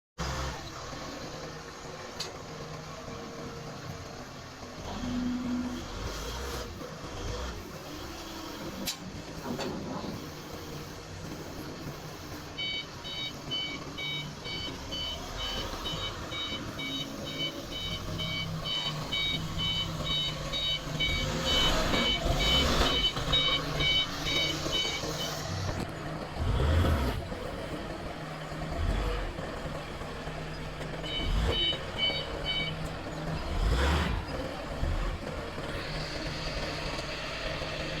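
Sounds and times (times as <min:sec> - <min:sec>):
forklift engine running: 0:00.2 - 0:38.0
reversing alarm beeping: 0:09.5 - 0:25.8, 0:30.5 - 0:34.4.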